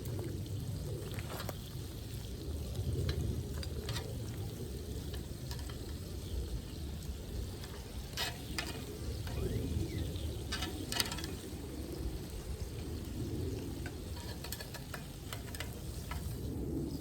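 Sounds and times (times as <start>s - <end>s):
food sizzling in a pan: 3.5s - 17.0s
utensil clicking against pan: 5.0s - 6.2s, 7.6s - 9.8s, 10.4s - 11.6s, 13.8s - 16.4s.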